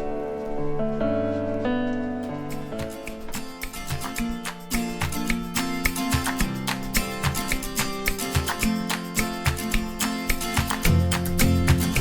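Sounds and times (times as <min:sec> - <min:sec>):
acoustic guitar music with beat: 0:02.0 - 0:12.0.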